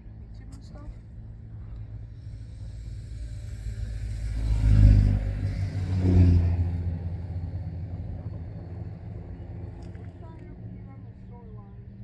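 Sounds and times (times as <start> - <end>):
road vehicle passing: 1.9 - 10.8.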